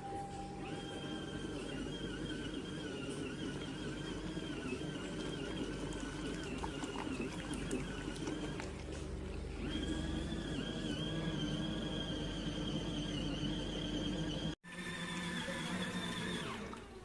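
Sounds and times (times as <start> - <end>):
washing machine motor whine: 0.0 - 17.0
water churning: 3.4 - 9.7.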